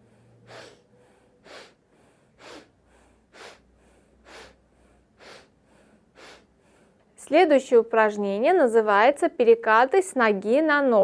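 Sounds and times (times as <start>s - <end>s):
person inhaling sharply: 0.0s - 7.0s.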